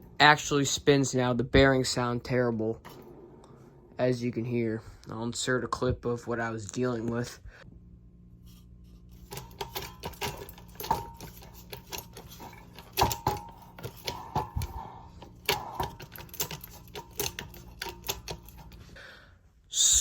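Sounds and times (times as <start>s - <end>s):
ceiling fan motor hum: 0.0s - 20.0s
fan clicking and knocking: 9.1s - 18.9s.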